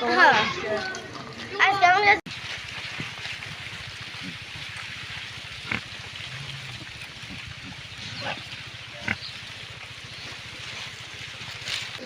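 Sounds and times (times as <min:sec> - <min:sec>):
pigs grunting: 0:02.7 - 0:12.0.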